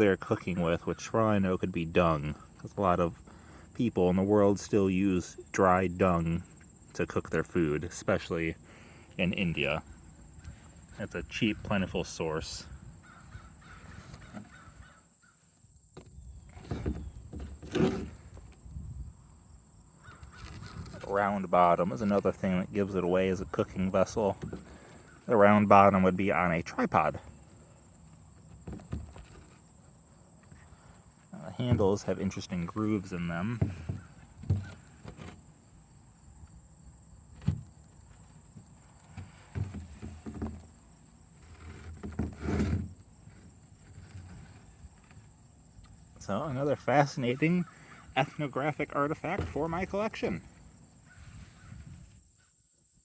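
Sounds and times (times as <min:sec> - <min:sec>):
handling knocks and rustles: 0:13.0 - 0:14.9, 0:15.9 - 0:18.9, 0:20.1 - 0:25.8, 0:27.0 - 0:46.9, 0:48.2 - 0:52.2
low bumps: 0:15.9 - 0:52.1.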